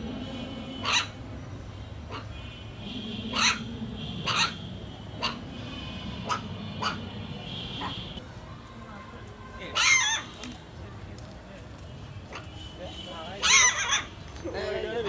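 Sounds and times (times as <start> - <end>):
puppy barking: 0.8 - 1.2, 2.1 - 2.4, 3.2 - 4.6, 5.2 - 5.5, 6.2 - 7.1, 9.7 - 10.3, 13.4 - 14.1.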